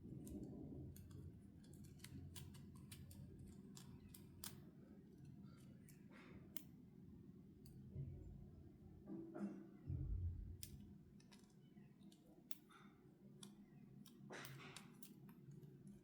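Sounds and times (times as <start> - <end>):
plastic toy pieces clicking: 0.9 - 4.6.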